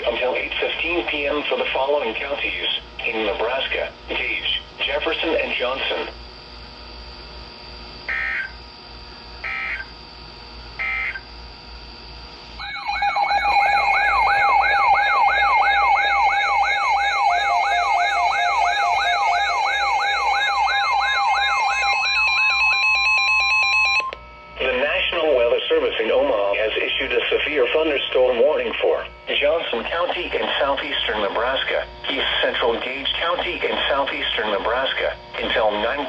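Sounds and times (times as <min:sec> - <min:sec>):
warbling siren alert: 0:08.1 - 0:08.7, 0:09.3 - 0:10.0, 0:10.7 - 0:11.4, 0:12.6 - 0:25.4
steady alert tone: 0:12.6 - 0:24.1
digital data bursts: 0:24.6 - 0:36.0.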